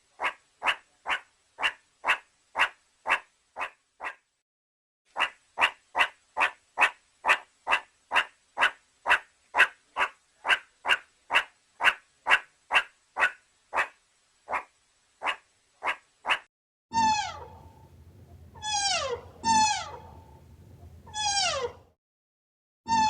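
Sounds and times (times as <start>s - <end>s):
animal short calls: 14.5s - 21.9s.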